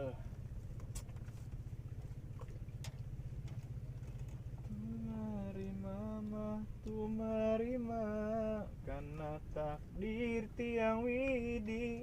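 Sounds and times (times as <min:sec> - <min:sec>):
motor rumbling: 0:00.0 - 0:12.0.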